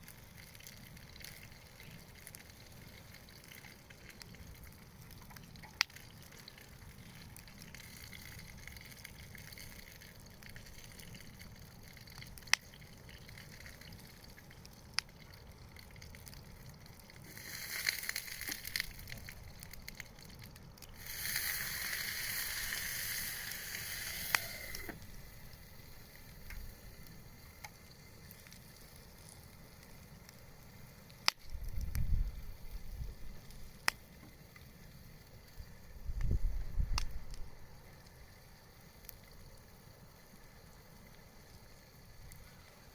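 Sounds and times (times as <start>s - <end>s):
fire popping: 0.0s - 38.4s
bonfire crackling: 0.0s - 42.9s
fire hissing: 17.2s - 20.1s, 20.8s - 42.9s.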